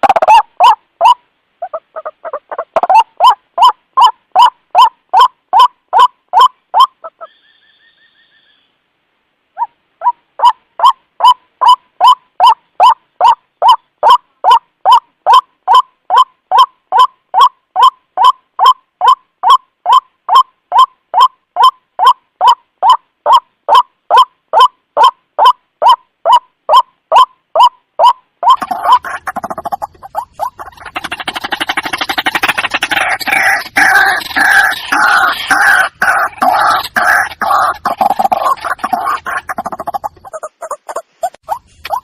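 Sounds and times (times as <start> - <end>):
faint high twittering trill: 7.2 - 8.8.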